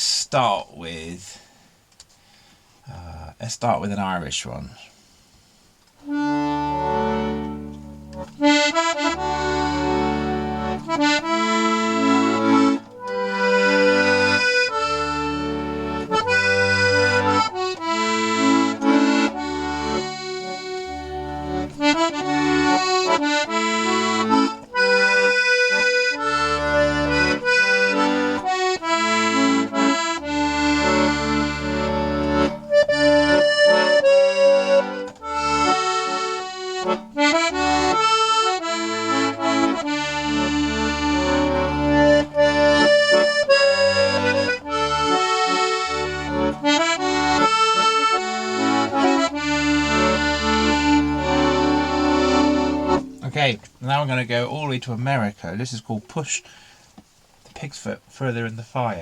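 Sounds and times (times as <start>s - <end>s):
accordion playing folk tune: 4.9s - 54.8s.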